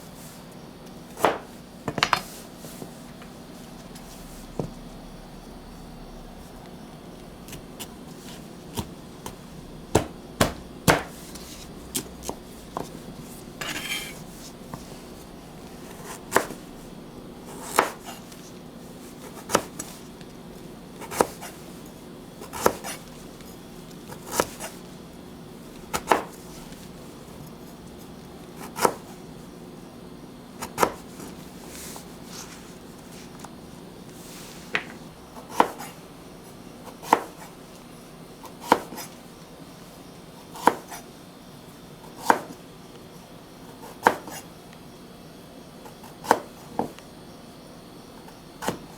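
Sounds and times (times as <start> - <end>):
constant low hum: 0.0 - 48.9
knife chopping on cutting board: 1.2 - 2.3, 7.5 - 16.8, 17.4 - 18.6, 19.2 - 20.0, 21.0 - 21.6, 22.4 - 23.1, 24.1 - 24.8, 25.8 - 26.8, 28.6 - 29.1, 30.6 - 31.4, 34.7 - 36.0, 36.9 - 37.5, 38.5 - 39.1, 40.5 - 41.0, 42.1 - 42.6, 43.8 - 44.4, 46.0 - 47.0, 48.6 - 48.9.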